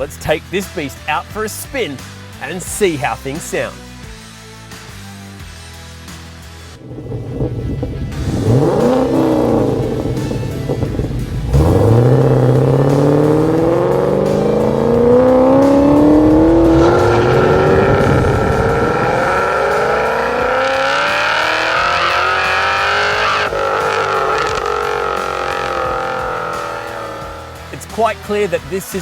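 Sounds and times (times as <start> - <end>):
car engine accelerating hard: 6.7 - 28.3.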